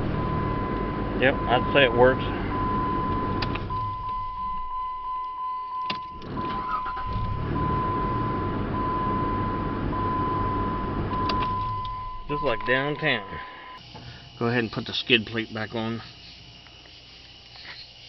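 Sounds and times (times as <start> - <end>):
car engine running: 0.0 - 5.0, 6.2 - 14.0
steady high tone: 0.1 - 5.2, 8.8 - 13.8.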